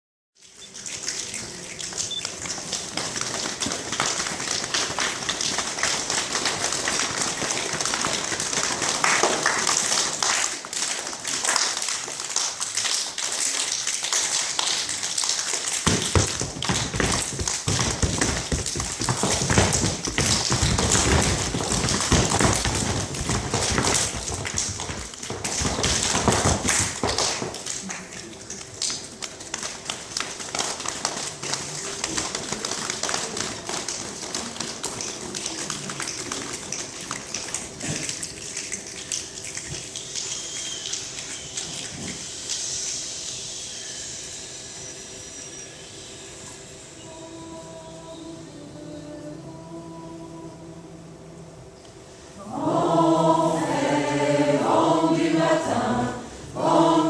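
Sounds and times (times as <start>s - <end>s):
choir tapping and snapping: 0.4s - 42.6s.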